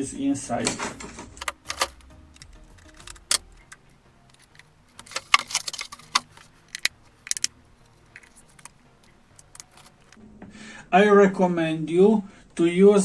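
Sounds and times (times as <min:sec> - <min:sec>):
batteries clicking and rattling: 0:00.6 - 0:10.2.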